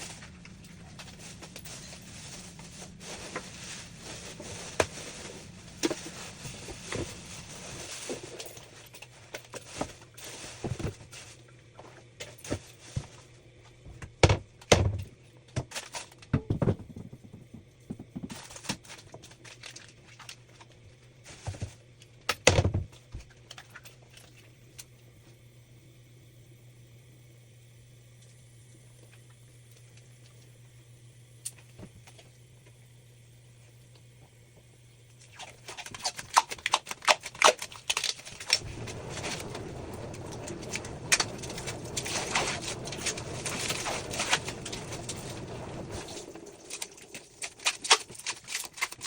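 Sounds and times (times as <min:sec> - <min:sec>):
objects knocking and clunking: 0:13.8 - 0:19.3, 0:21.4 - 0:23.3.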